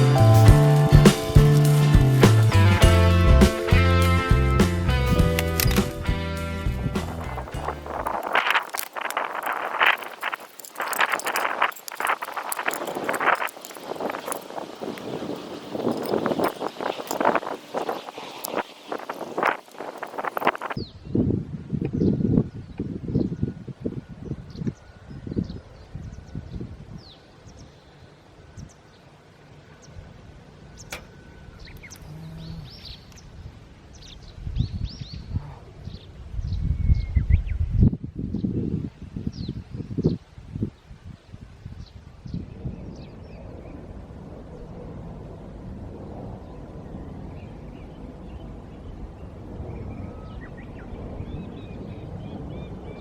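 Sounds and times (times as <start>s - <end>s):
small birds chirping: 0.0s - 21.2s, 24.3s - 37.6s
low rumbling gusts: 0.0s - 53.0s
sharp click: 4.6s - 6.0s.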